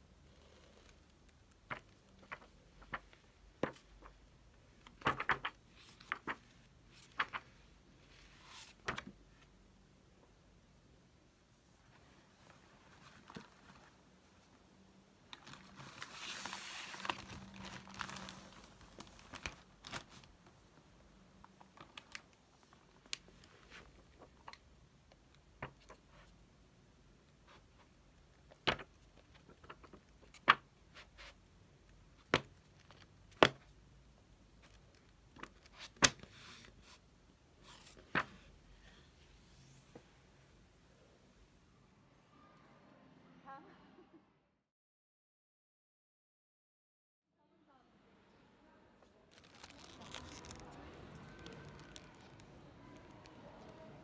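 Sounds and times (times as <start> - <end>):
crinkling rustle: 4.9 - 9.0, 11.8 - 14.6, 15.2 - 20.8, 21.4 - 24.6, 49.3 - 53.9.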